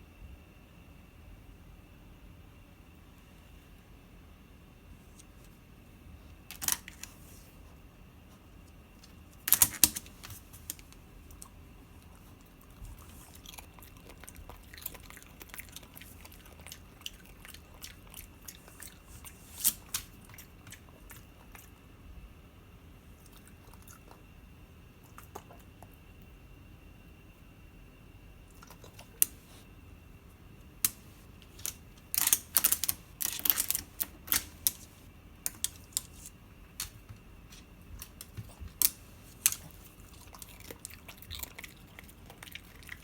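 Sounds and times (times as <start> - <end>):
dog crunching a snack: 9.3 - 21.8, 28.5 - 29.6, 30.8 - 43.0.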